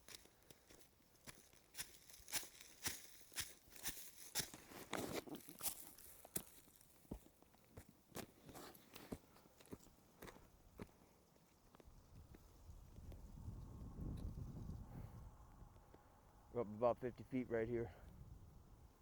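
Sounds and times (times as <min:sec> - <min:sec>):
footsteps crunching on dry trail: 0:00.0 - 0:12.8.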